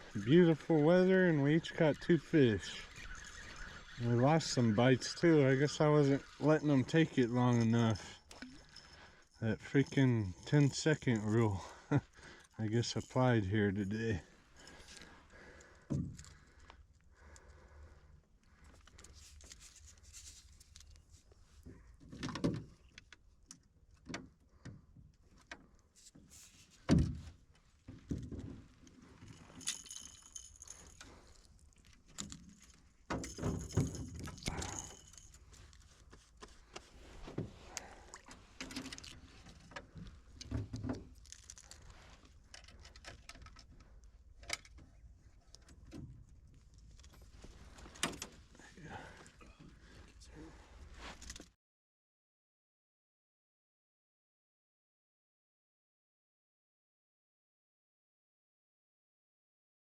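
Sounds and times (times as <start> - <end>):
knocks and rattles of handling: 18.5 - 50.0
metallic jingling: 29.1 - 31.6, 32.2 - 35.8.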